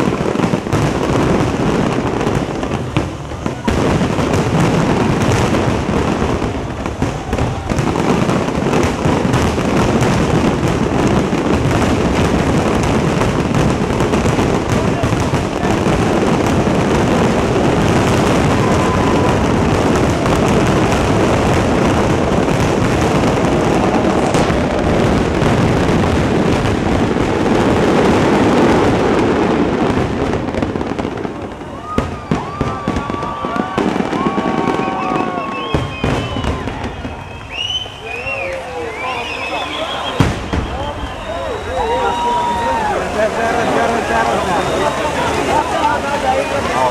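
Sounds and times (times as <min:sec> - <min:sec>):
fireworks bangs and crackling: 0:00.0 - 0:46.9
firework whistles: 0:31.6 - 0:43.0, 0:44.2 - 0:45.6.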